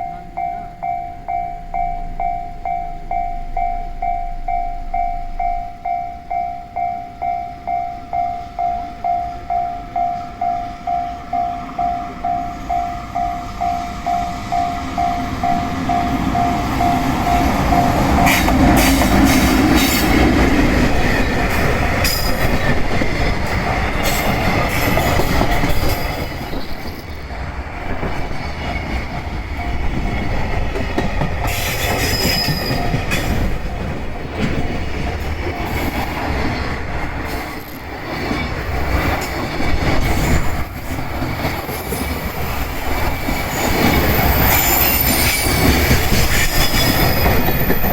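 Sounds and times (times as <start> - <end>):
level crossing warning bell: 0.0 - 27.2, 28.6 - 36.4, 40.6 - 47.9
wheel squeals on rail: 7.5 - 33.7, 34.4 - 47.9
train wheels clattering: 7.6 - 47.9.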